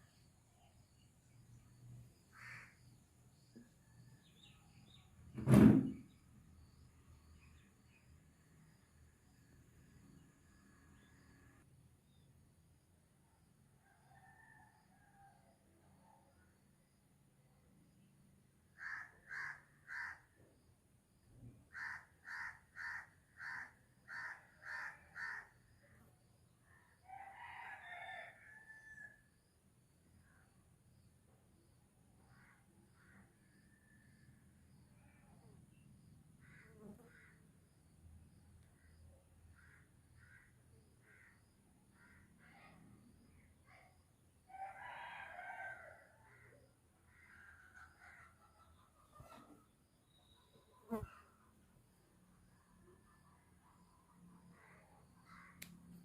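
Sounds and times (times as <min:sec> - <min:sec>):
loud dull thud: 0:05.4 - 0:06.0
faint bird chirps: 0:46.3 - 0:51.6.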